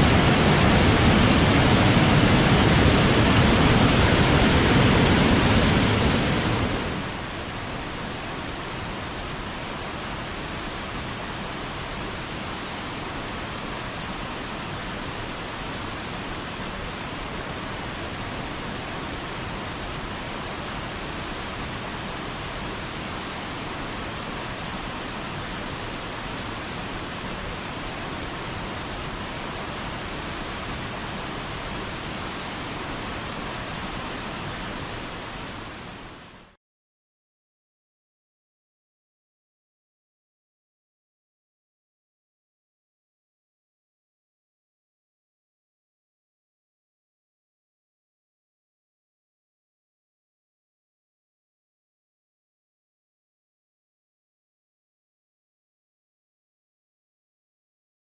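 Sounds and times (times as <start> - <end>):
waterfall roaring: 0.0 - 36.6.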